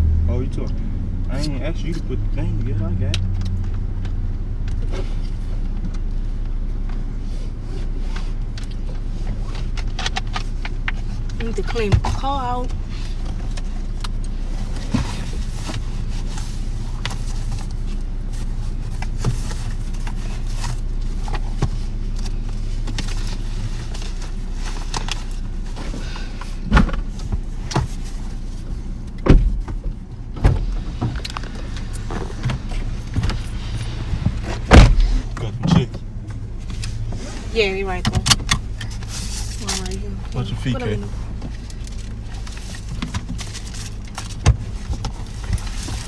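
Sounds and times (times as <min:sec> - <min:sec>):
car engine idling: 0:00.0 - 0:46.0
knocks and thumps: 0:26.6 - 0:28.1, 0:29.1 - 0:36.4.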